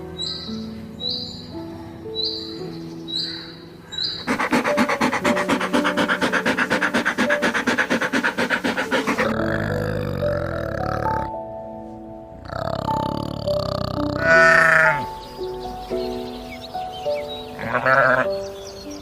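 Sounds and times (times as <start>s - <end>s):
background music: 0.0s - 19.0s
low drawn-out animal call: 3.9s - 11.4s, 12.4s - 15.2s, 17.6s - 18.4s
animal call of rapid pulses: 4.2s - 11.3s.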